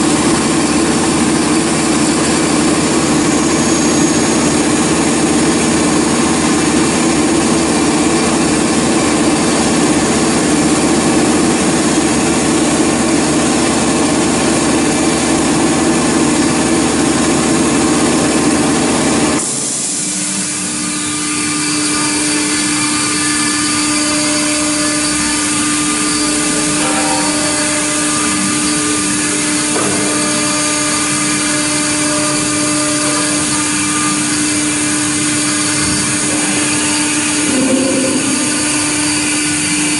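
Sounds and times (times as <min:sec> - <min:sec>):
router spindle milling metal: 0:19.9 - 0:39.9.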